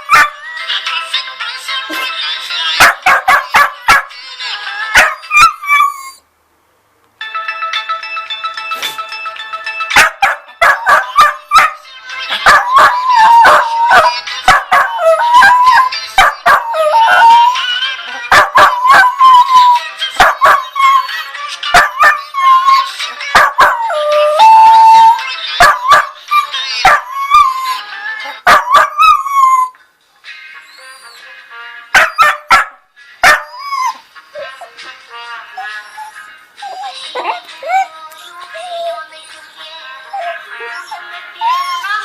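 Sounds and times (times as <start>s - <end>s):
dog howling: 10.6s - 29.8s, 40.1s - 42.0s.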